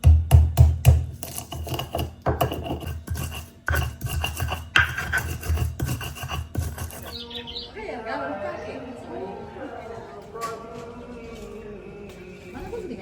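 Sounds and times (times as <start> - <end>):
rasping scraping sounds: 1.2 - 7.6.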